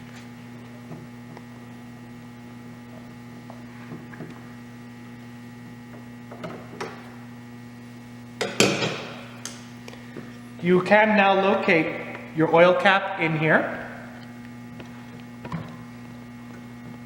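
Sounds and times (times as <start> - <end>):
electrical mains hum: 0.0 - 17.0.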